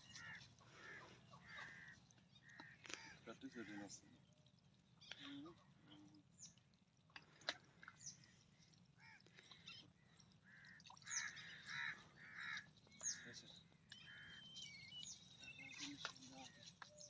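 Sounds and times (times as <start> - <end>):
crow cawing: 0.1 - 3.9, 10.4 - 13.4
high bird chirps: 13.9 - 16.1.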